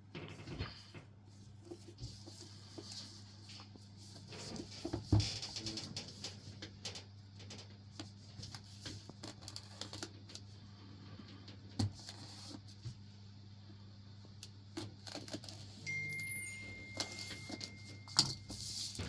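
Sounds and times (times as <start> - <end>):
low steady hum: 9.2 - 19.0.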